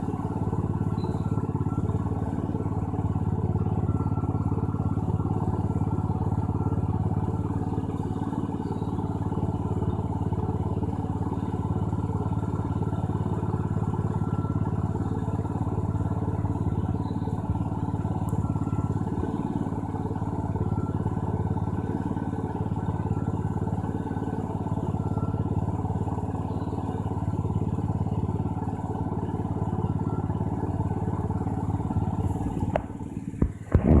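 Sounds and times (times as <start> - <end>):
steady machine hum: 26.7 - 34.0.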